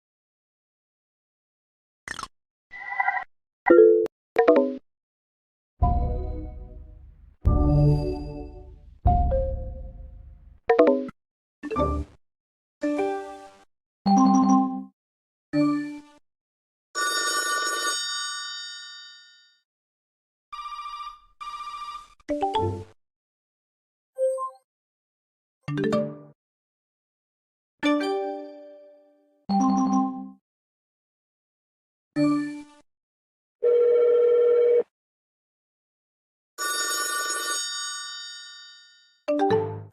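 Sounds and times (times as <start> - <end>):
bell-like chime: 37.6 - 39.3.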